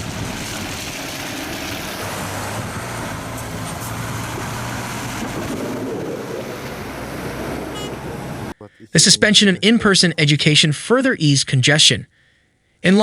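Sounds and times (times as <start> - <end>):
vehicle engine hum: 0.0 - 9.8
traffic noise: 0.0 - 10.6.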